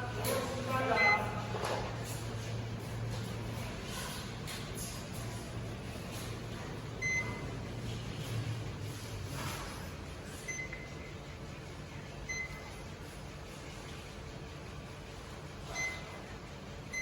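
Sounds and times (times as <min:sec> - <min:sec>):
steady low hum: 0:00.0 - 0:17.0
control panel key beeps: 0:01.0 - 0:01.3, 0:07.0 - 0:07.4.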